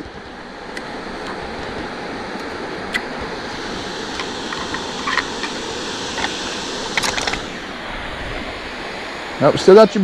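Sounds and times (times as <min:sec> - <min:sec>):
lake water lapping: 0:00.0 - 0:09.5
wind rushing: 0:03.2 - 0:09.5.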